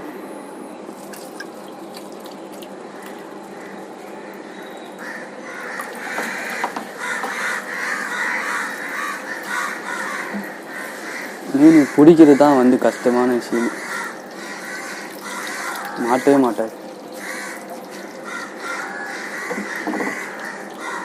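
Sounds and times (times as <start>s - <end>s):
steady hum: 0.0s - 21.0s
water sloshing in aquarium: 0.9s - 7.1s.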